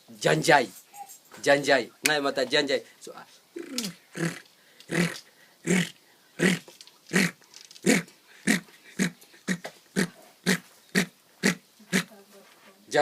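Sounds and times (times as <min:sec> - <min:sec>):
man imitating animal grunts: 0:03.6 - 0:12.1.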